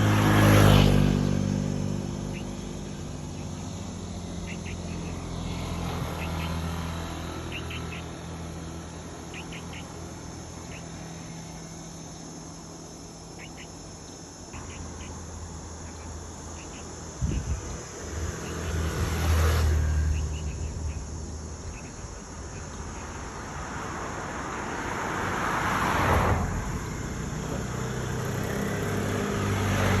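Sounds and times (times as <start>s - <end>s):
low engine hum: 0.0s - 30.0s
vehicles passing by: 0.0s - 30.0s.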